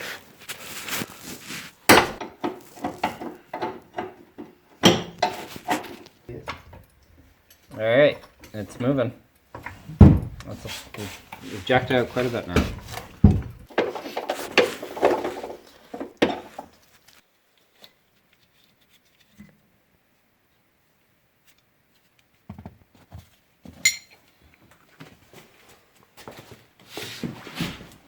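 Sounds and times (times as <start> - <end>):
metal tools clinking and knocking: 1.9 - 8.9, 23.8 - 24.2
sharp ringing clink: 23.8 - 24.1.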